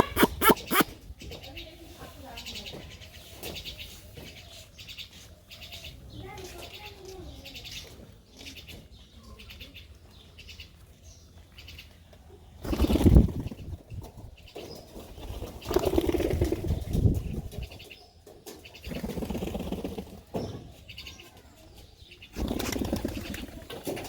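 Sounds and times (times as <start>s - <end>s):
faint bird chirps: 0.0s - 1.6s
pigeon wings flapping: 12.7s - 13.6s, 22.4s - 24.0s.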